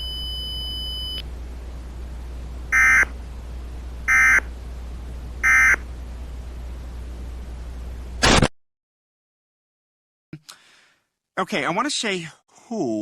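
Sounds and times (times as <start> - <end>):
steady low hum: 0.0 - 8.5.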